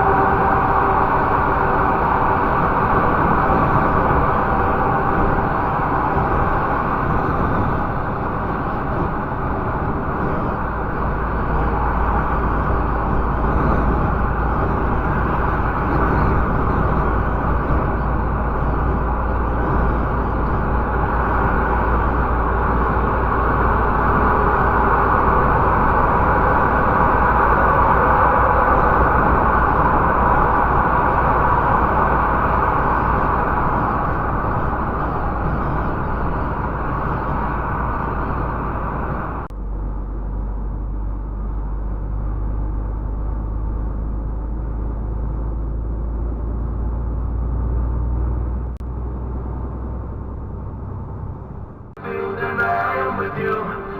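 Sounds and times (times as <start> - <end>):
tyres and wind hiss: 0.0 - 39.5
truck engine rumble: 0.0 - 53.9.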